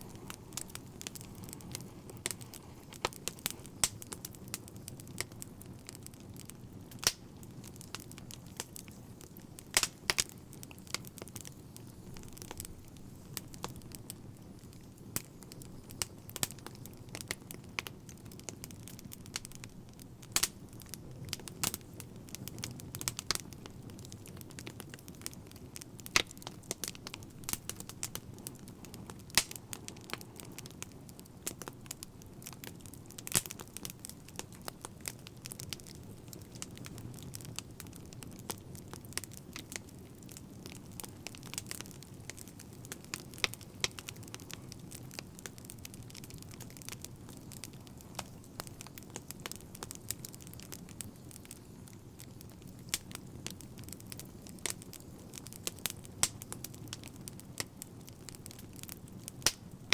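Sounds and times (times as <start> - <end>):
fire crackling and popping: 0.0 - 59.9.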